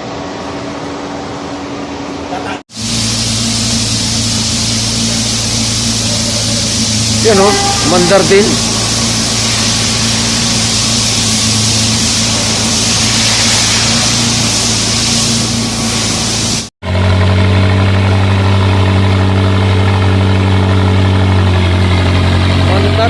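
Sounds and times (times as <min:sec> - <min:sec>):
loud hiss: 0:02.7 - 0:16.7
car engine idling: 0:02.7 - 0:23.0.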